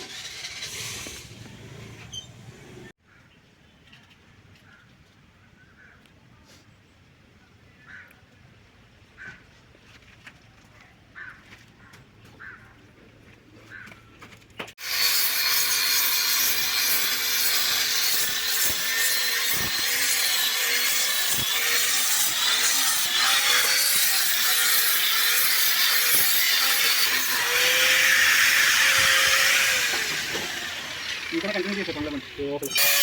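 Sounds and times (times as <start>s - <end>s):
angle grinder grinding metal: 0.0s - 2.3s, 14.8s - 33.0s.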